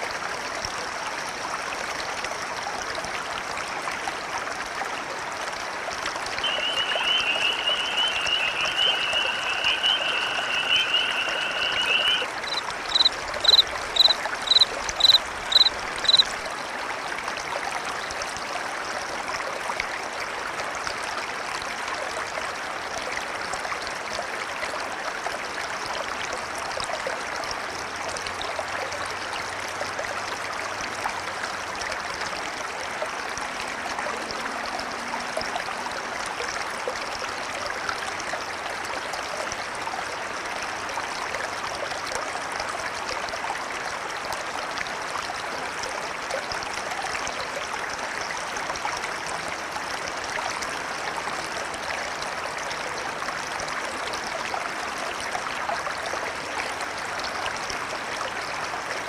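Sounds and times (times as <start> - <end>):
river water rushing: 3.9 - 21.9.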